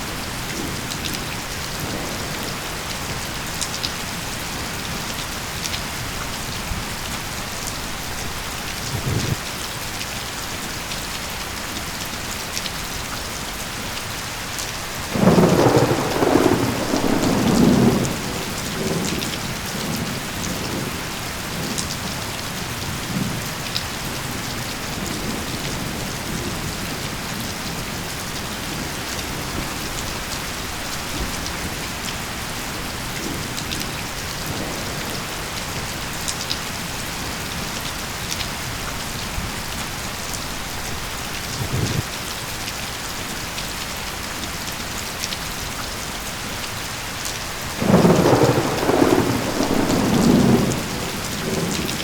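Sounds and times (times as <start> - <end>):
steady rainfall: 0.0 - 52.0
thunder rumbling: 15.1 - 22.2, 38.7 - 42.1, 47.8 - 52.0.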